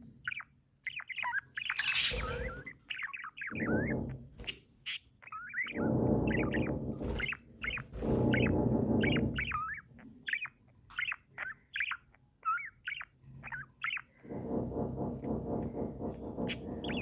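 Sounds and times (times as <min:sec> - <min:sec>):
budgerigar warbling: 0:00.3 - 0:03.9.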